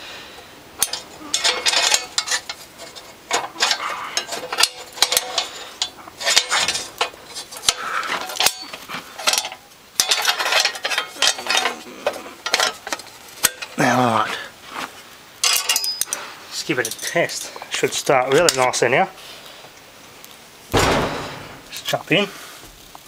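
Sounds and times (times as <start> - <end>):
metallic clinks and scrapes: 0.8 - 13.8, 15.4 - 18.8.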